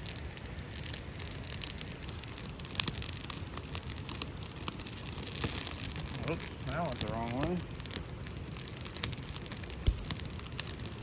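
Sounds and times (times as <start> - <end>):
crackling and rustling: 7.9 - 11.0.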